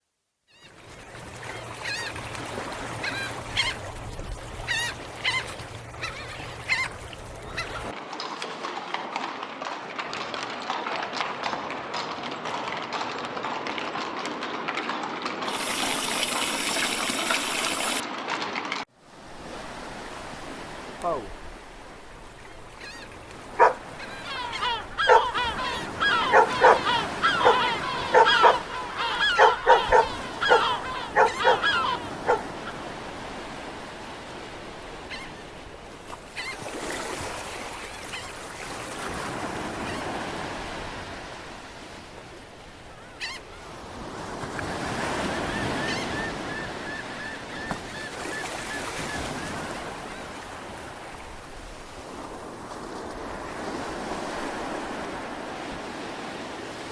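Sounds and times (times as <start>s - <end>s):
waves washing on shore: 0.7s - 9.3s, 15.4s - 18.3s, 19.1s - 56.9s
dog barking: 23.6s - 23.8s, 25.0s - 25.4s, 26.0s - 32.5s.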